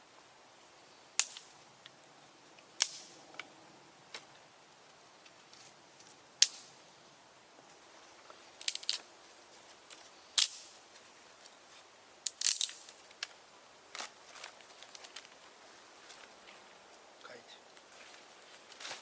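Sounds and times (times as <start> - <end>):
sharp snaps and clicks: 1.2 - 2.0, 2.8 - 3.5, 8.6 - 9.0, 10.4 - 10.8, 12.2 - 13.4.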